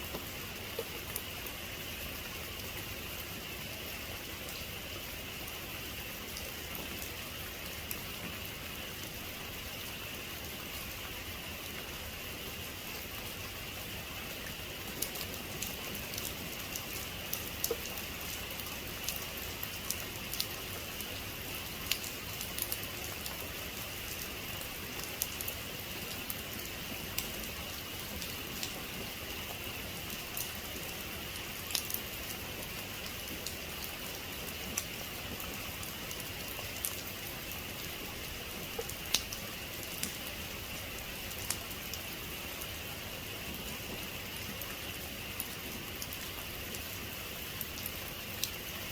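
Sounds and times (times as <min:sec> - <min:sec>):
raindrops ticking on surface: 0:00.0 - 0:48.9.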